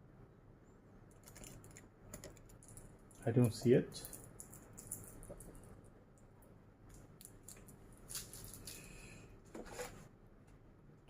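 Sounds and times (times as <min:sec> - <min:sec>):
plastic parts rustling and clicking: 0:01.1 - 0:05.7, 0:07.2 - 0:08.9.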